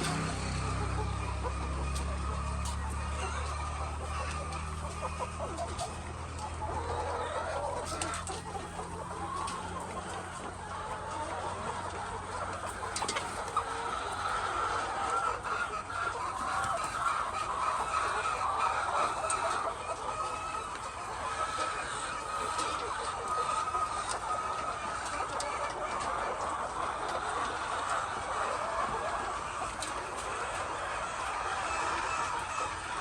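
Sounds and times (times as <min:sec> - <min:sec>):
hens clucking and calling: 0:00.0 - 0:33.0.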